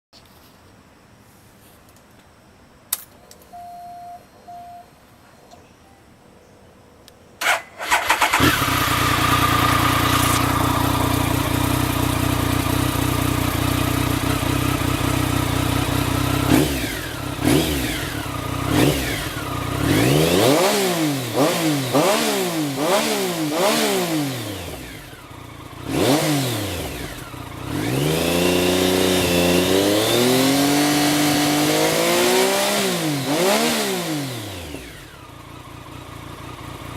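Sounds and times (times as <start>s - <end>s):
short beep: 3.5s - 6.1s
motorcycle engine revving: 7.4s - 36.9s.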